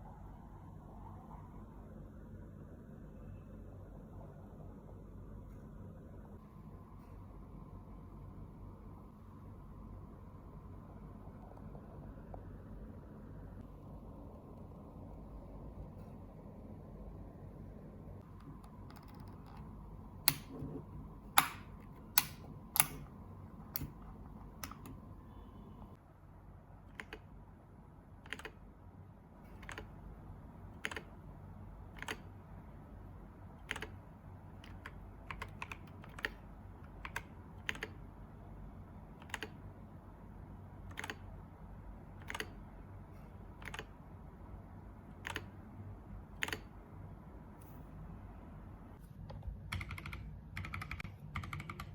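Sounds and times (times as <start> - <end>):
mechanical keyboard keystrokes: 18.2 - 25.0, 26.9 - 27.3, 28.2 - 28.6, 29.5 - 30.0, 30.7 - 31.2, 31.9 - 32.3, 33.6 - 34.0, 34.6 - 38.0, 39.1 - 39.7, 40.8 - 41.3, 42.2 - 42.6, 43.5 - 44.0, 45.1 - 45.5, 46.3 - 46.7, 49.3 - 51.9.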